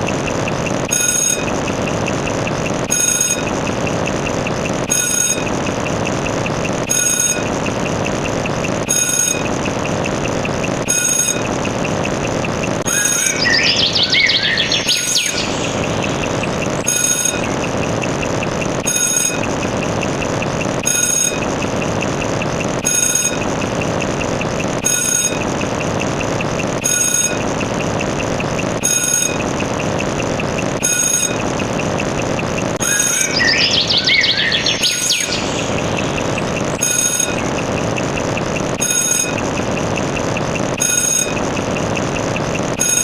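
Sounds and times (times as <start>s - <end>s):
steady mechanical rumbling: 0.0s - 43.0s
warbling chirping glide: 0.0s - 43.0s
short high electronic beep: 12.8s - 17.6s, 22.8s - 23.4s, 30.8s - 31.4s, 32.8s - 37.6s.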